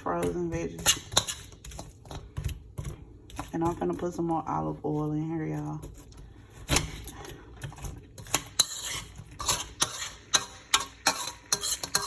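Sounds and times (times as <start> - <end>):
utensil clacking in frying pan: 0.0 - 4.2, 7.6 - 12.0.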